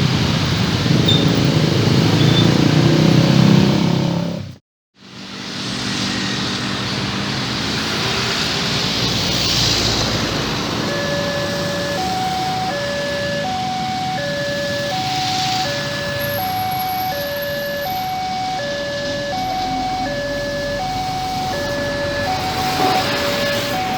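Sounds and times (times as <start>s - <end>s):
road traffic noise: 0.0s - 23.9s
level crossing warning siren: 9.9s - 23.9s.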